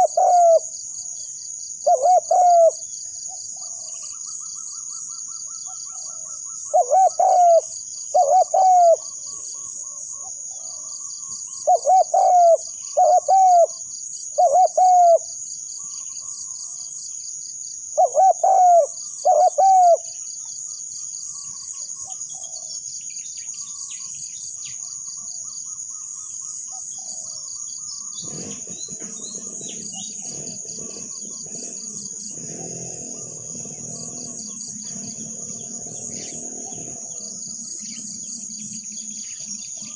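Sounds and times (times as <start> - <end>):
dove cooing: 0.0 - 0.8, 1.8 - 10.0, 11.6 - 13.8, 14.4 - 15.3, 18.0 - 20.1, 26.7 - 39.9
high insect buzz: 28.1 - 39.9.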